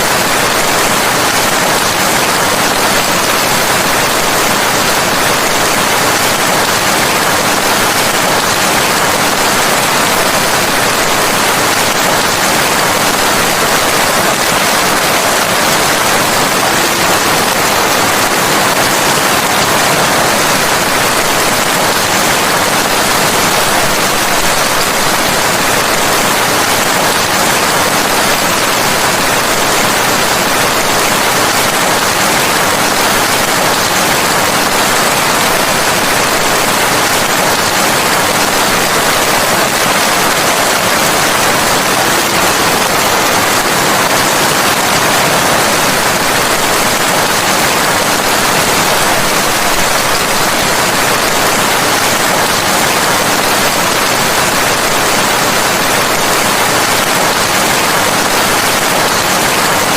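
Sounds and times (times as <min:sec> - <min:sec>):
heavy rain: 0:00.0 - 0:59.9.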